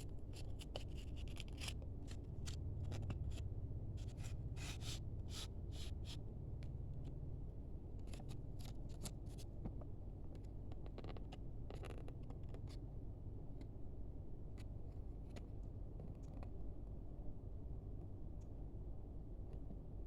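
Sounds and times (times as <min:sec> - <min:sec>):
steady low hum: 0:00.0 - 0:20.0
card and wrapper scrapes and clicks: 0:00.4 - 0:03.4.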